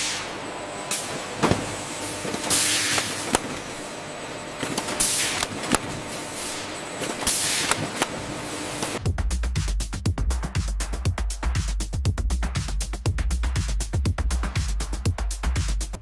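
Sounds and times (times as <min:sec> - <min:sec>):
hissing air blasts: 0:00.0 - 0:09.0
machinery humming: 0:00.0 - 0:09.1.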